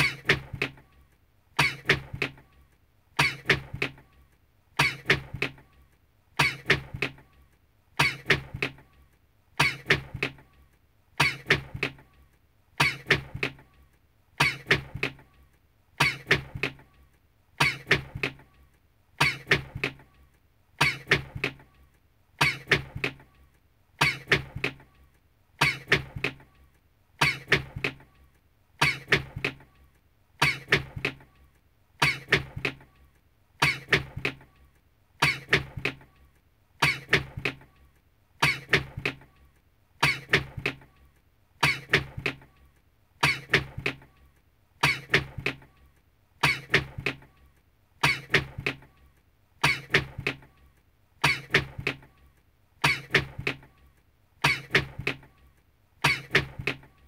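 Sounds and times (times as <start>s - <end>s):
person sneezing: 1.6s - 2.0s, 4.8s - 5.2s, 6.4s - 6.8s, 8.0s - 8.4s, 9.6s - 10.0s, 11.2s - 11.6s, 12.8s - 13.2s, 14.4s - 14.9s, 16.0s - 16.4s, 17.6s - 18.1s, 19.2s - 19.6s, 22.4s - 22.9s, 24.0s - 24.4s, 27.2s - 27.6s, 33.6s - 34.0s, 36.8s - 37.2s, 40.0s - 40.4s, 41.6s - 42.0s, 44.8s - 45.3s, 46.4s - 46.9s, 48.0s - 48.5s, 49.6s - 50.1s, 51.2s - 51.7s, 52.8s - 53.3s, 54.4s - 54.9s, 56.0s - 56.5s.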